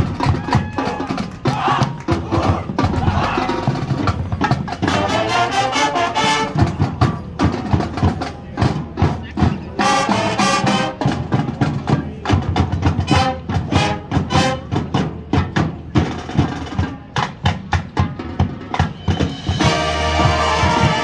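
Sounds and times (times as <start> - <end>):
marching band playing: 0.0 - 21.0.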